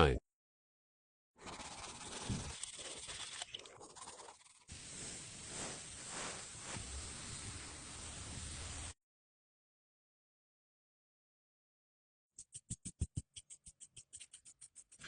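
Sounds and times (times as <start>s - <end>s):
steady hiss with crackle: 4.7s - 9.0s.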